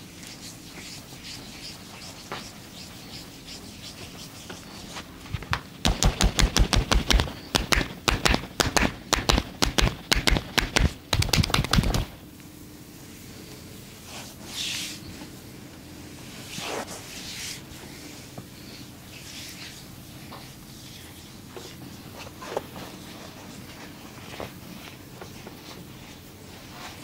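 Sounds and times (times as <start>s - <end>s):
hands striking body: 5.5s - 12.1s.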